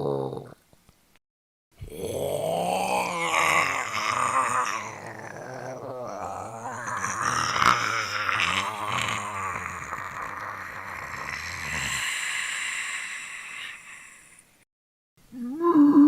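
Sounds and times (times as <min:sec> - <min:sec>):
zombie growl: 0:01.8 - 0:14.1.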